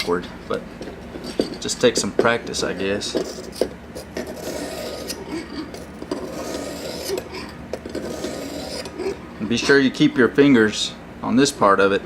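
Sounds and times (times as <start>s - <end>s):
knife scraping on sharpening hone: 2.6s - 9.7s.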